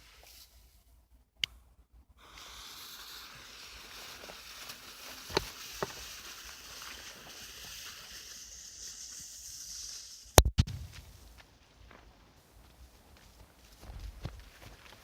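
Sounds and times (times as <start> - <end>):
firecracker fuse fizzing: 2.2 - 11.6.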